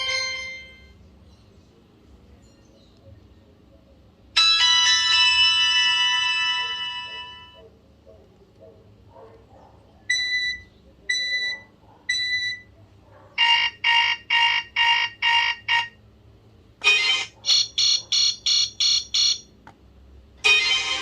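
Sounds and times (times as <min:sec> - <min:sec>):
musical ringtone: 0:00.0 - 0:01.0, 0:04.4 - 0:07.6, 0:13.4 - 0:16.0, 0:16.8 - 0:19.4, 0:20.4 - 0:21.0
high phone beeps: 0:10.1 - 0:12.7, 0:16.8 - 0:19.5
pulsed phone beeps: 0:10.1 - 0:12.7.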